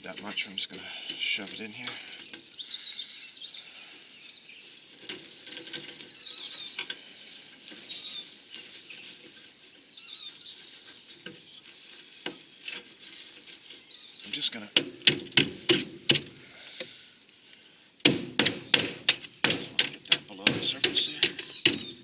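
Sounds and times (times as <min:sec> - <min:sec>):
plastic cloth rustling: 0:00.0 - 0:16.6
light knocks: 0:14.8 - 0:16.4, 0:18.0 - 0:22.0.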